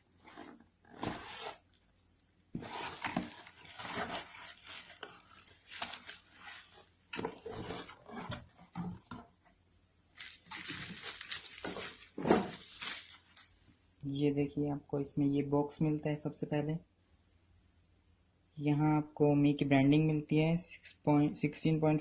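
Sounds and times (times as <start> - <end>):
packaging rustling and scraping: 0.0 - 1.8, 2.6 - 9.4, 10.1 - 13.6.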